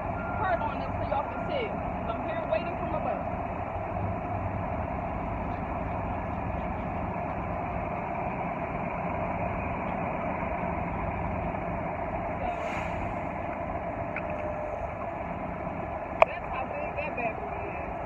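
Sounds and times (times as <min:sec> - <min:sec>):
street traffic rumble: 0:00.0 - 0:18.0
brief hiss: 0:12.6 - 0:13.3.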